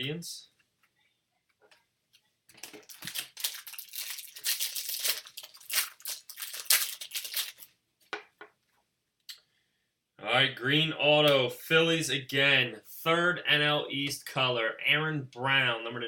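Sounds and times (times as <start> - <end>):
foil wrapper tearing and crinkling: 2.5 - 7.7.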